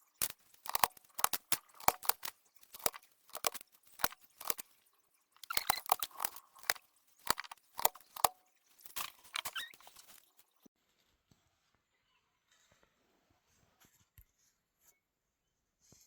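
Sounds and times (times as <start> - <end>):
keyboard plastic clicks and clatter: 0.1 - 4.7, 5.4 - 10.4.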